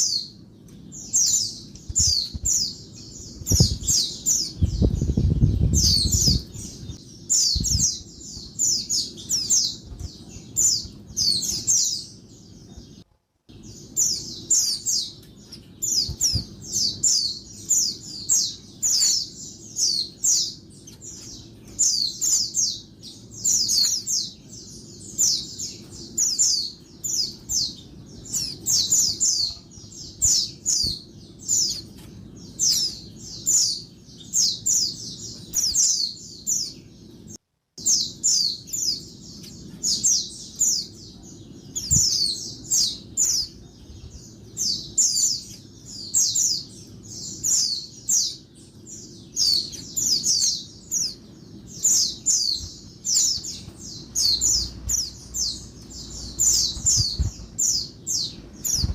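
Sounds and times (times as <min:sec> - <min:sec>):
bird chattering chirps: 0:37.8 - 0:58.9.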